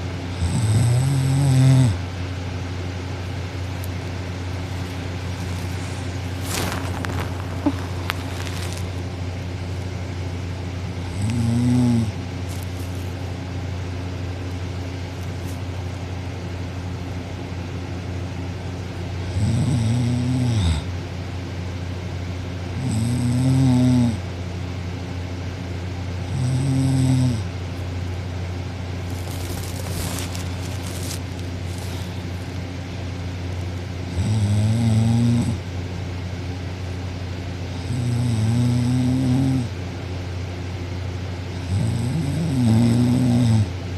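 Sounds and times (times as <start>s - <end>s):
steady low hum: 0.0s - 43.9s
girl snoring loudly: 0.4s - 2.0s, 11.1s - 12.1s, 19.3s - 20.9s, 22.8s - 24.2s, 26.3s - 27.4s, 34.2s - 35.6s, 37.8s - 39.7s, 41.7s - 43.7s.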